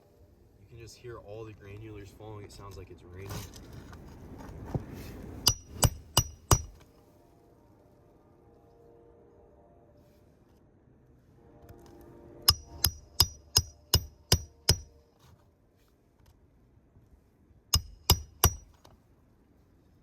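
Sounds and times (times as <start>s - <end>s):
hammer striking roofing nails: 5.4s - 6.8s, 12.5s - 15.0s, 17.8s - 18.8s.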